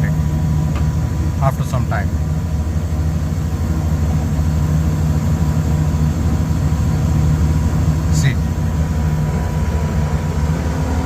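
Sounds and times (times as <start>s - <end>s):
air conditioner blower hum: 0.0s - 11.0s.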